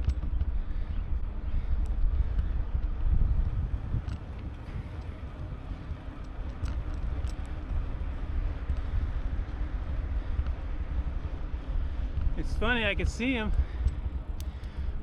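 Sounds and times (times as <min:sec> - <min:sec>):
bicycle riding noise: 0:00.0 - 0:15.0
wind noise on microphone: 0:00.0 - 0:15.0
faint ticks: 0:01.8 - 0:11.1, 0:13.0 - 0:15.0.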